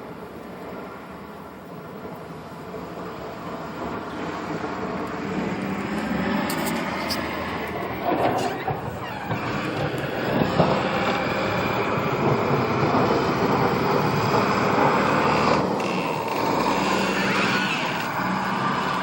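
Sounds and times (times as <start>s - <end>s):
diesel engine running under load: 2.7s - 19.0s.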